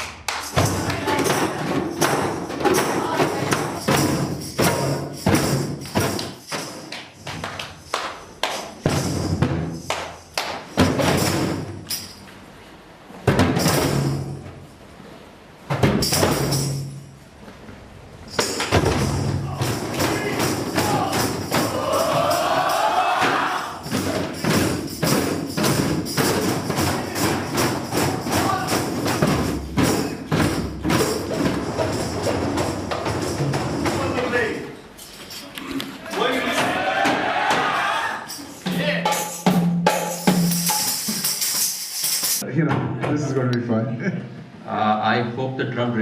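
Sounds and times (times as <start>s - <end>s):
tambourine: 0.4s - 12.2s, 16.0s - 17.1s, 18.3s - 34.2s, 36.2s - 42.4s
hand drums playing: 0.5s - 6.6s, 18.4s - 34.4s, 36.5s - 42.4s.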